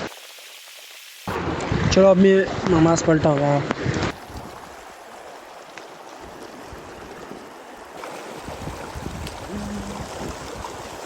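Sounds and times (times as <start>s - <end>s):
stream water flowing: 4.1s - 11.0s.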